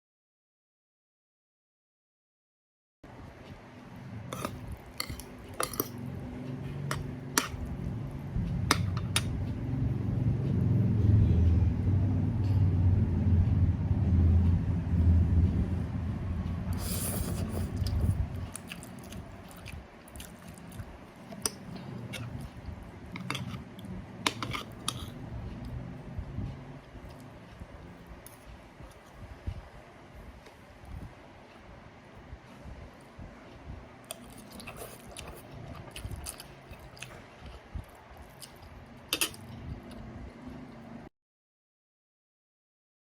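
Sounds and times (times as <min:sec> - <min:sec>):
low rumble: 0:04.0 - 0:34.0.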